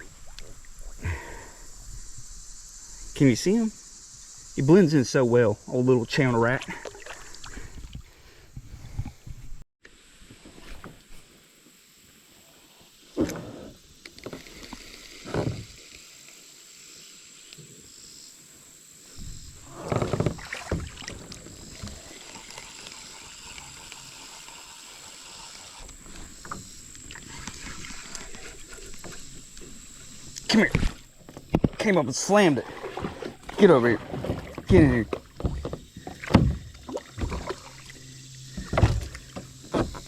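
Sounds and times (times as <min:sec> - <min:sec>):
kayak hull bumps and knocks: 0:15.3 - 0:15.8, 0:19.2 - 0:22.0, 0:30.5 - 0:32.0, 0:32.6 - 0:40.0.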